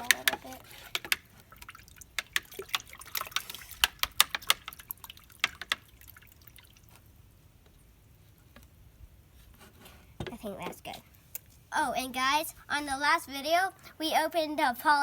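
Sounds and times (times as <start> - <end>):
liquid splashing in plastic tub: 0.0 - 7.1.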